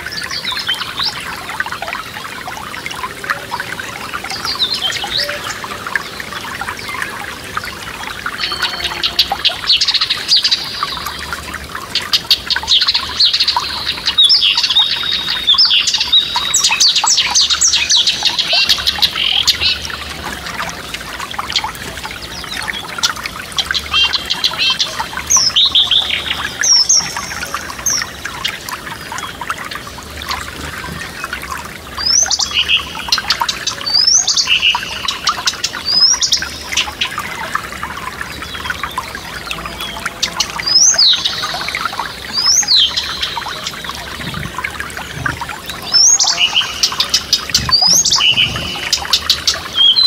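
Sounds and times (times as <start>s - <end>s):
songbirds singing: 0.0s - 50.0s
stream trickling: 0.0s - 50.0s.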